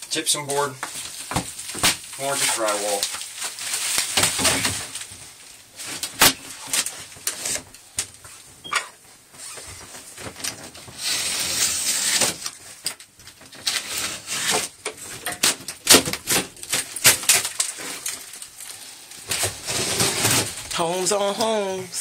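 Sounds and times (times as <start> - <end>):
drywall scraping and crumbling: 0.4 - 8.4, 9.4 - 21.8
drywall cracking and knocking: 0.8 - 5.2, 5.8 - 8.2, 12.0 - 18.6, 19.2 - 21.6.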